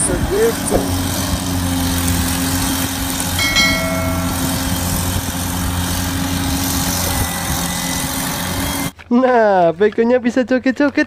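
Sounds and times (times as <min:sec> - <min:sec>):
toy excavator motor hum: 0:00.0 - 0:09.0
brief ringing tone: 0:03.4 - 0:05.1.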